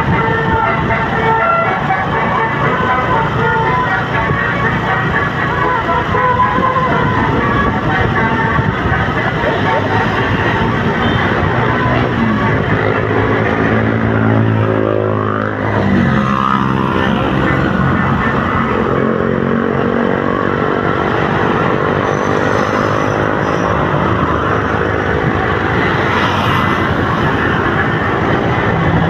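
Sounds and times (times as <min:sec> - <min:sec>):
multi-tone bus horn tune: 0:00.0 - 0:25.8
bus engine running: 0:00.0 - 0:29.0.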